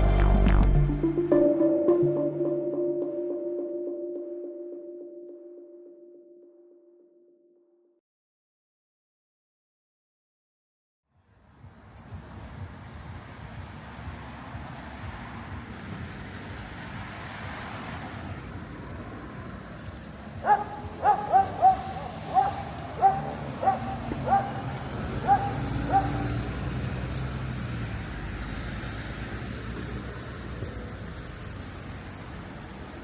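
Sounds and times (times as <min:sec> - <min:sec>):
street background noise: 0:11.2 - 0:33.0
vehicle engine rumble: 0:11.2 - 0:33.0
dog barking: 0:20.4 - 0:26.5.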